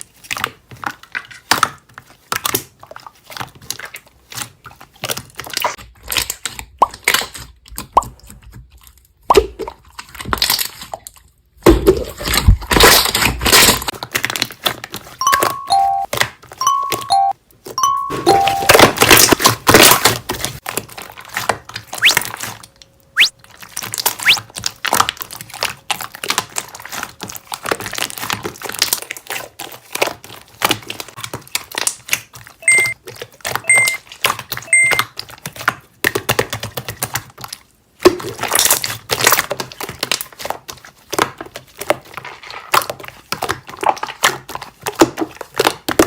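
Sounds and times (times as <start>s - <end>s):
short beeps: 15.2s - 18.8s, 32.6s - 33.0s, 33.7s - 34.0s, 34.7s - 35.0s.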